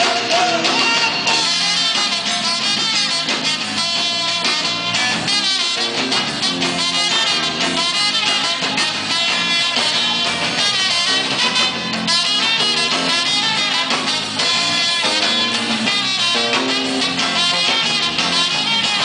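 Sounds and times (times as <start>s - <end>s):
guitar: 0.0s - 19.0s
horn section: 0.0s - 19.0s
live band playing: 0.0s - 19.0s.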